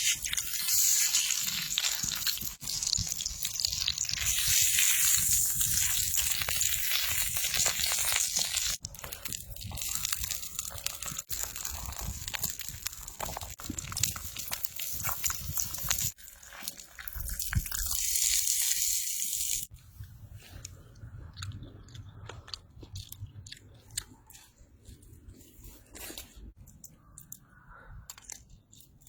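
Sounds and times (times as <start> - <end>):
beef sizzling on hot stone: 0.0 - 19.7.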